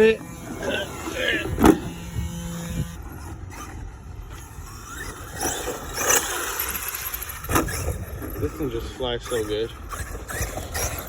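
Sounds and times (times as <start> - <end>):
electric toy truck motor whining: 0.0 - 11.0.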